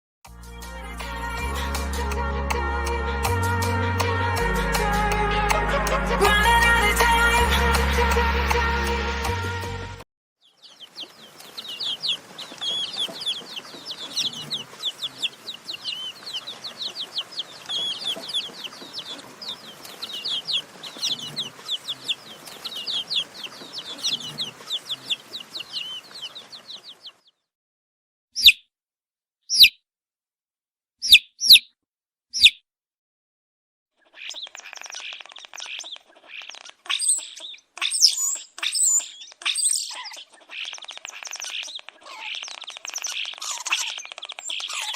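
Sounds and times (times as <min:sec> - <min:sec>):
baby chicks peeping: 0:10.4 - 0:27.5, 0:29.5 - 0:29.8, 0:31.0 - 0:31.7, 0:32.4 - 0:32.6, 0:34.0 - 0:44.9.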